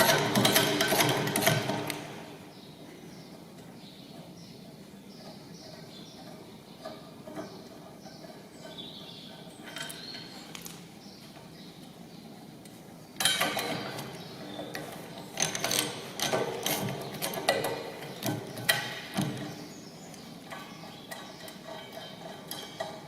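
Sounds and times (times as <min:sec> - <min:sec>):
sharp metallic knocks: 0:00.0 - 0:02.3.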